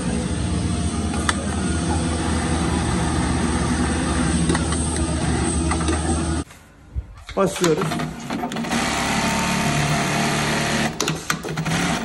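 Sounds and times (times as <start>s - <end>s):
low motor hum: 0.0s - 6.4s
sewing machine stitching: 7.7s - 12.0s.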